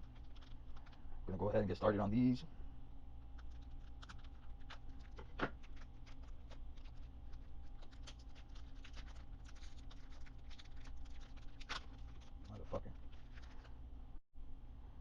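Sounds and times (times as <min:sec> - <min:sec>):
foil wrapper crinkling and tearing: 0:00.0 - 0:01.0, 0:03.4 - 0:13.8.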